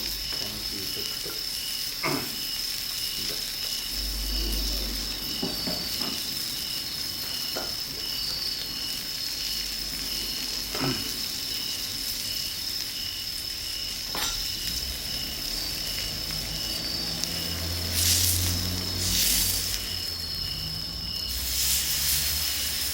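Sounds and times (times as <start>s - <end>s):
meat sizzling in a pan: 0.0s - 22.9s
low hum: 3.8s - 8.0s.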